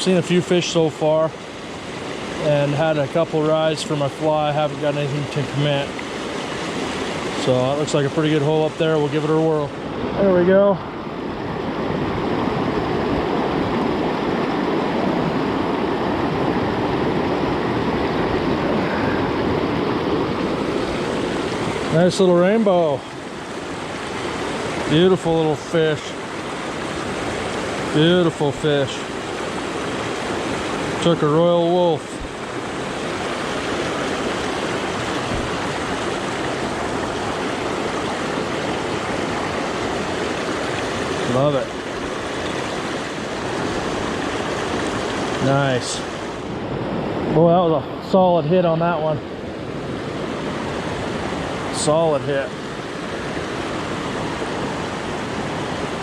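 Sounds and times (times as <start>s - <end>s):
creek running over rocks: 0.0s - 56.0s.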